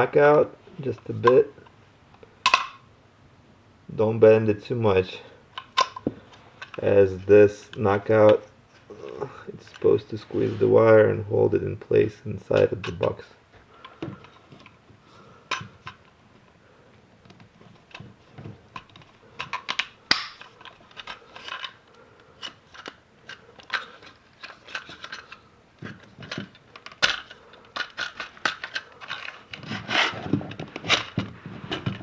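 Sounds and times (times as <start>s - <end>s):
electrical box clicking and scraping: 17.2s - 32.0s.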